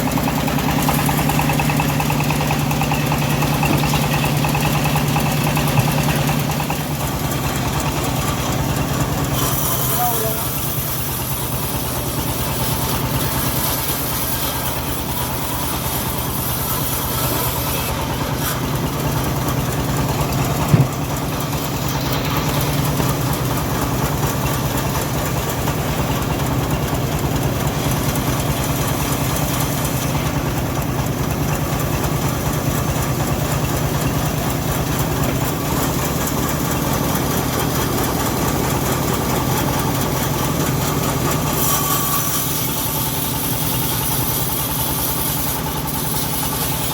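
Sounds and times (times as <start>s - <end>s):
bandsaw mill engine running: 0.0s - 46.9s
sharp knock: 20.6s - 21.1s.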